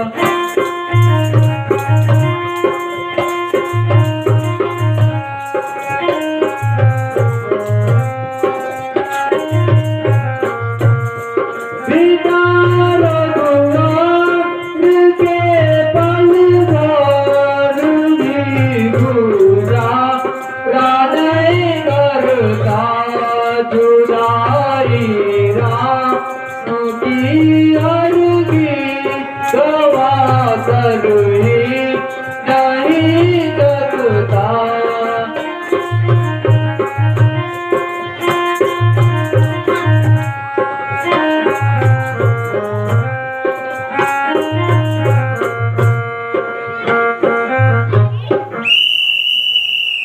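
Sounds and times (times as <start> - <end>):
person singing: 0.0 - 6.8, 11.8 - 36.6
instrumental melody: 0.0 - 50.0.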